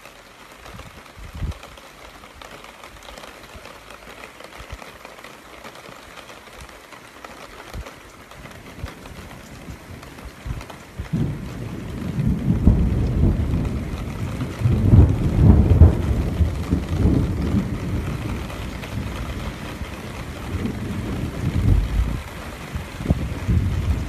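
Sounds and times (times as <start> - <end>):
steady rain: 0.0 - 24.0
thunder rumbling: 8.4 - 24.0.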